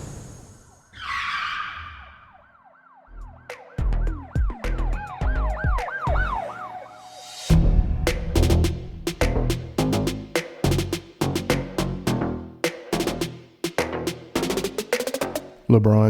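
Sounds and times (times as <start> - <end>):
siren-like rising and falling tone: 0.4 - 7.8
heavy bass hits: 7.5 - 11.7.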